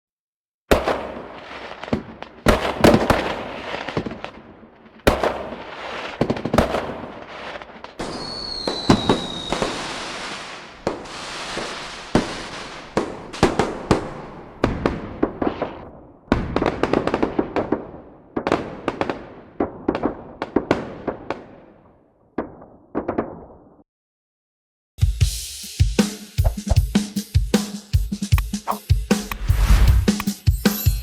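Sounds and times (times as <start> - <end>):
firework crackling: 5.4 - 15.9, 29.2 - 30.3
fireworks banging: 6.2 - 16.7
firework whistle: 8.0 - 14.9.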